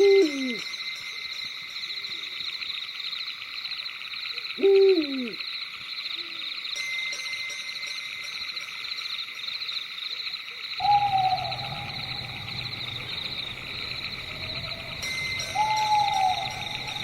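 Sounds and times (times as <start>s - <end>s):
crickets trilling: 0.0s - 17.0s
owl hooting: 4.6s - 5.4s, 10.8s - 17.0s
low drone: 10.8s - 17.0s.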